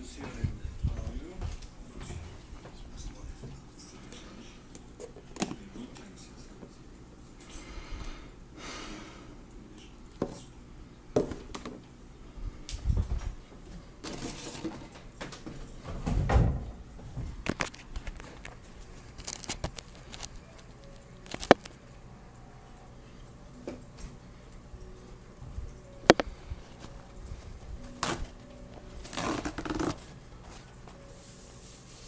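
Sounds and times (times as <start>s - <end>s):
objects being handled: 17.2s - 21.8s, 26.0s - 32.0s.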